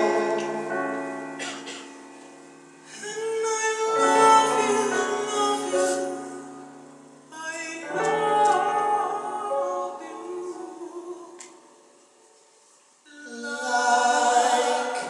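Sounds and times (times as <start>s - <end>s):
voices singing in harmony: 0.0s - 1.8s, 3.0s - 6.7s, 7.4s - 11.8s, 13.1s - 15.0s.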